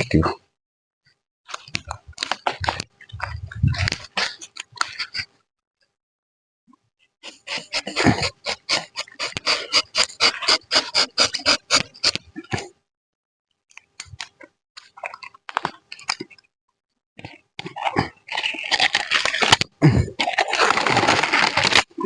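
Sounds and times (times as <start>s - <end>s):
rubber tapping knife scraping: 7.3s - 12.2s.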